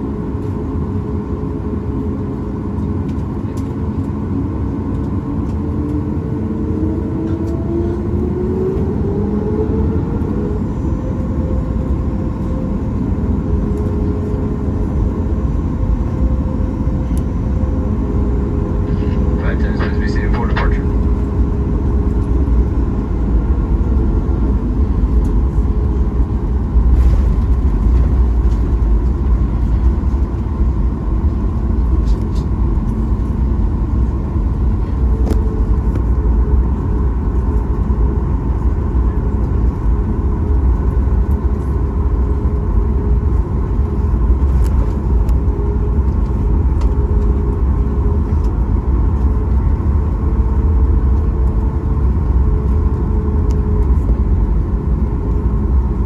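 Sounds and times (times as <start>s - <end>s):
airplane cabin engine rumble: 0.0s - 56.0s
faint steady hum: 18.8s - 21.3s.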